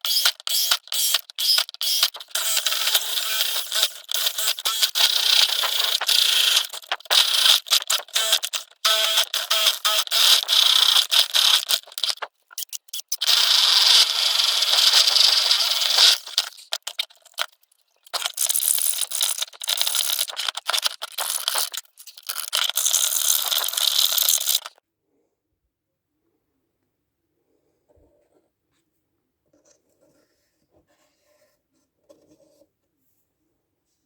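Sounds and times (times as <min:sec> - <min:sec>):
hard objects rattling and scraping: 0:01.0 - 0:12.8, 0:14.5 - 0:24.8.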